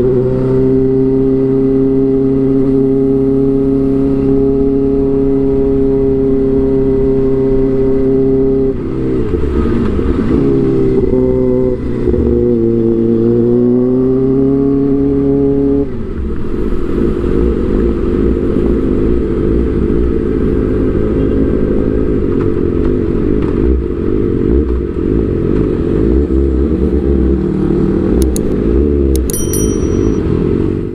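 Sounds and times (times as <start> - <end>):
sharp clicks: 28.2 - 28.6, 29.2 - 30.2.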